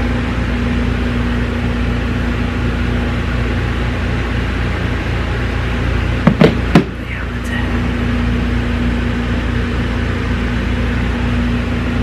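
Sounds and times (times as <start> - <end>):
appliance whirring and humming: 0.0 - 12.0
sharp knock: 6.3 - 6.9.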